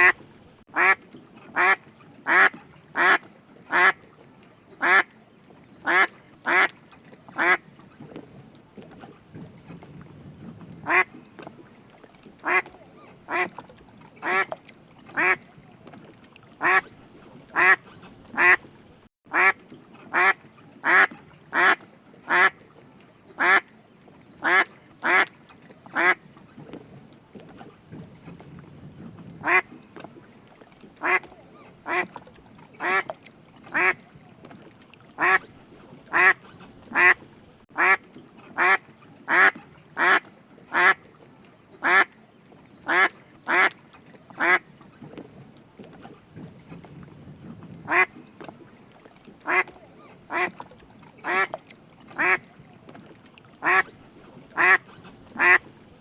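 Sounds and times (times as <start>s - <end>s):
duck quacking: 0.8s - 1.0s, 1.6s - 4.0s, 4.8s - 5.1s, 5.9s - 6.7s, 7.4s - 7.6s, 10.8s - 11.1s, 12.4s - 12.7s, 13.3s - 13.5s, 14.2s - 14.5s, 15.2s - 15.4s, 16.6s - 16.8s, 17.6s - 17.8s, 18.4s - 18.6s, 19.3s - 22.5s, 23.4s - 23.6s, 24.4s - 25.3s, 26.0s - 26.2s, 29.4s - 29.7s, 31.0s - 31.3s, 31.9s - 32.1s, 32.8s - 33.1s, 33.7s - 34.0s, 35.2s - 35.4s, 36.1s - 37.2s, 37.8s - 38.0s, 38.6s - 41.0s, 42.9s - 43.8s, 44.4s - 44.6s, 47.9s - 48.1s, 49.5s - 49.7s, 50.3s - 50.5s, 51.3s - 51.5s, 52.2s - 52.4s, 53.6s - 53.8s, 54.6s - 55.6s.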